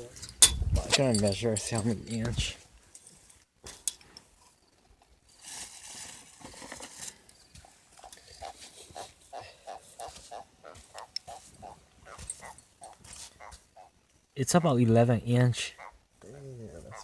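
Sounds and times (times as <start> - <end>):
handling rustle: 0.0 - 13.8
catfish squeaky croaks: 9.0 - 14.0, 15.7 - 16.1, 16.8 - 17.0.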